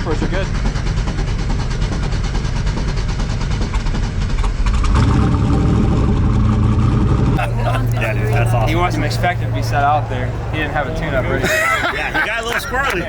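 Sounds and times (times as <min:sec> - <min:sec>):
car engine idling: 0:07.4 - 0:13.0.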